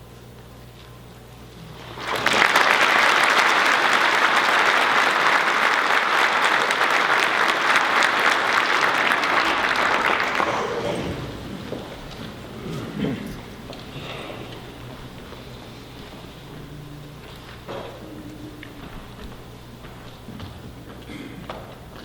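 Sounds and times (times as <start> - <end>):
audience applauding: 1.7 - 11.1.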